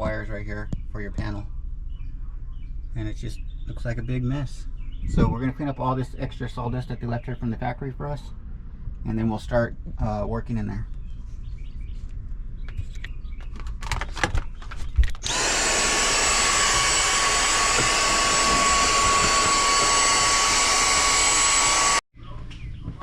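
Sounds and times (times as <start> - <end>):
vacuum cleaner whining: 15.2 - 22.0.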